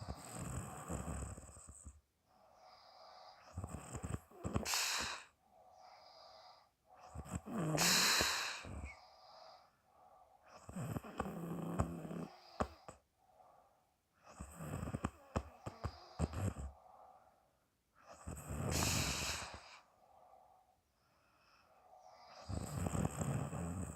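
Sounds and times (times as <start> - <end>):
woman snoring: 0.0 - 1.9, 2.7 - 5.3, 7.0 - 9.3, 10.6 - 13.0, 14.3 - 16.8, 18.1 - 19.9, 22.1 - 23.9
breath puffed through mouth: 4.5 - 5.3, 7.2 - 9.0, 18.7 - 19.8.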